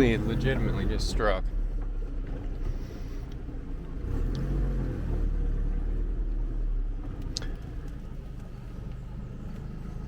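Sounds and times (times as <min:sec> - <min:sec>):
truck engine rumbling: 0:00.0 - 0:10.0.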